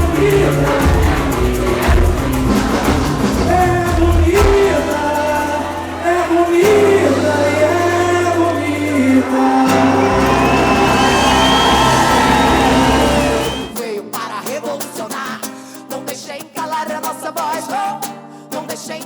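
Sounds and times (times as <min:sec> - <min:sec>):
live band music: 0:00.0 - 0:13.8
person singing long notes: 0:03.5 - 0:13.8.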